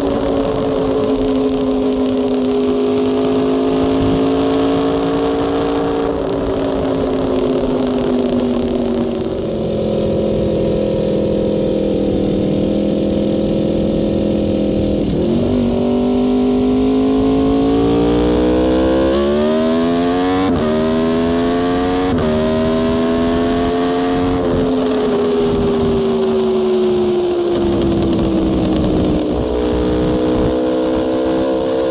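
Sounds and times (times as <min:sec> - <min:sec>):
motorcycle engine revving with upshifts: 0:00.0 - 0:31.9.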